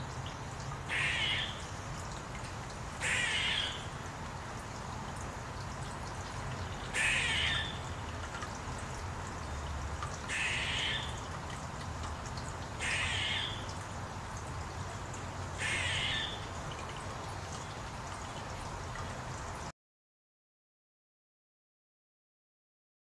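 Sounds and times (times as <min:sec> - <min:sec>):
crow cawing: 0:00.9 - 0:01.6, 0:03.0 - 0:03.8, 0:07.0 - 0:07.8, 0:10.3 - 0:11.1, 0:12.8 - 0:13.6, 0:15.6 - 0:16.4.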